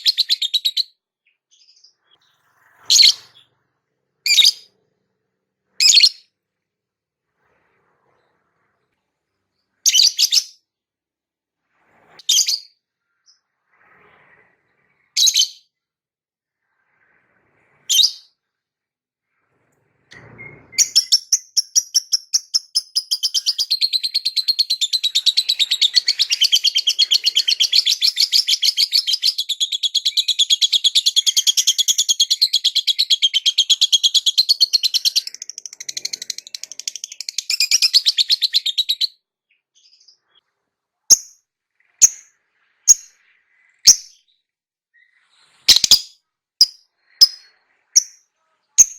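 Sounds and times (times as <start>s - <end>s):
lovebird chirping: 0.0s - 3.5s, 4.3s - 4.7s, 5.8s - 6.2s, 9.8s - 10.6s, 12.2s - 13.4s, 15.2s - 15.6s, 20.2s - 40.5s, 41.1s - 44.4s, 45.0s - 48.9s.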